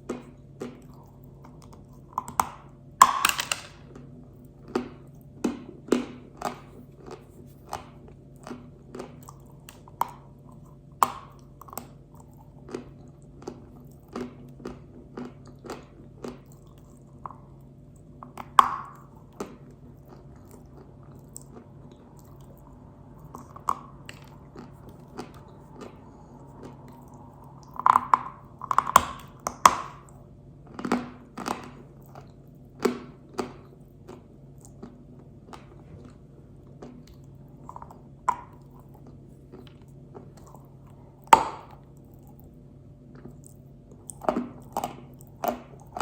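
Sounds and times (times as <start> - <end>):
soft chewing clicks: 0.0 - 2.8, 3.9 - 46.0
clay crunching when chewed: 0.0 - 46.0
faint steady hum: 0.0 - 46.0.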